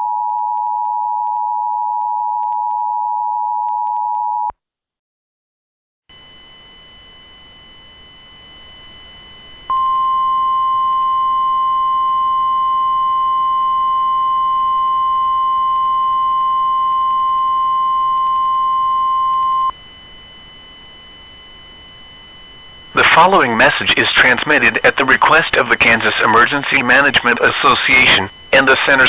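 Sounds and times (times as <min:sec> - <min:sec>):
loud steady pure tone: 0:06.1 - 0:29.0.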